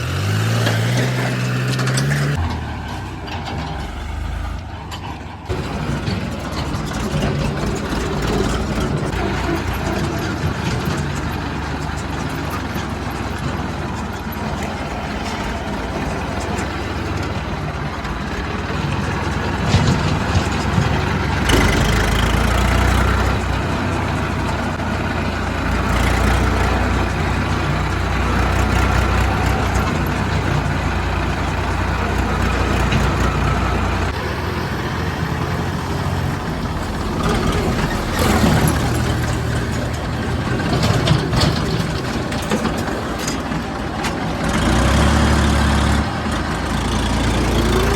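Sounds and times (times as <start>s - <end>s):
heavy diesel engines running: 0.0s - 47.9s
short knocks and clatters: 4.9s - 24.8s, 37.2s - 45.2s.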